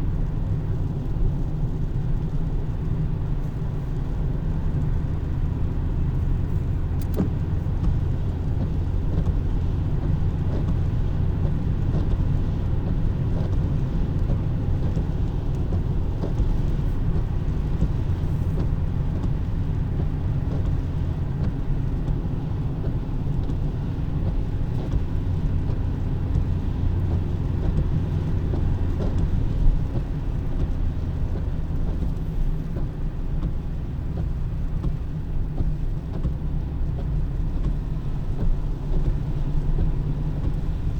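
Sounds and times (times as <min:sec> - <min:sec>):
car road noise rumble: 0:00.0 - 0:40.9
faint clicks: 0:07.0 - 0:09.4.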